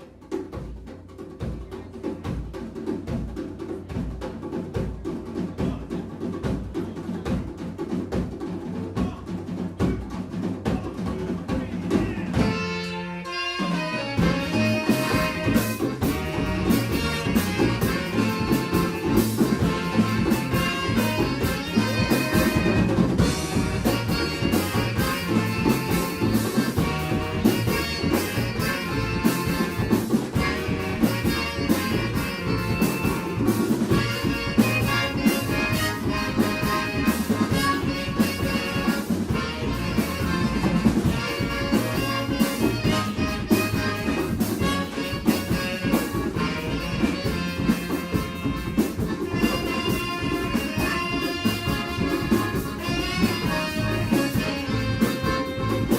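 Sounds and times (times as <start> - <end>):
drum kit beat: 0.0 - 55.9
live band playing: 0.0 - 55.9
stepping bass line: 13.6 - 55.9.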